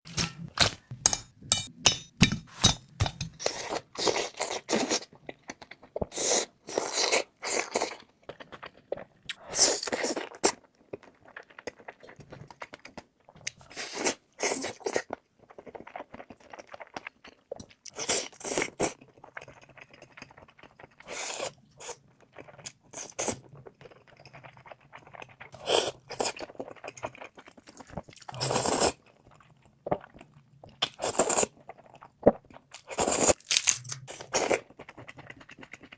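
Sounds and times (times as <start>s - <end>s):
crunchy chewing: 32.7s - 35.9s.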